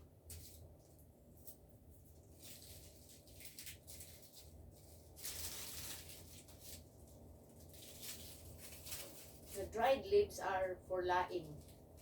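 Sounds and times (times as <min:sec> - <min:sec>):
dry leaves rustling: 0:01.4 - 0:10.0.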